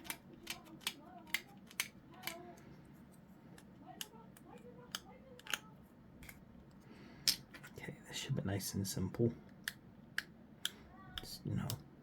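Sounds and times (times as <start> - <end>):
sprue cutters snipping plastic: 0.0 - 2.5.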